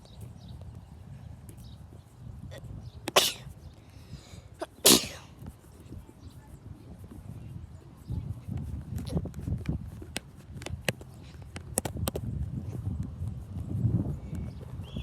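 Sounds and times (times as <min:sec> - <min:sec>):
person sneezing: 0:03.1 - 0:03.6, 0:04.6 - 0:05.4.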